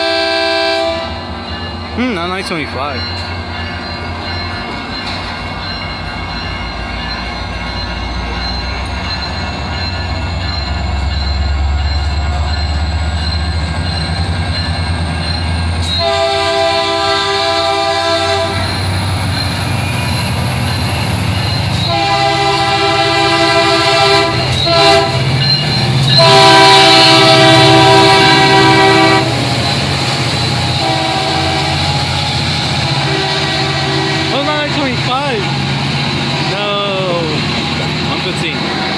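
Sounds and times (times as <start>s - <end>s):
train air horn blasts: 0.0s - 1.2s, 15.8s - 18.8s, 21.8s - 25.3s, 26.0s - 29.6s, 30.7s - 34.7s
train approaching with low rumble: 0.0s - 38.9s.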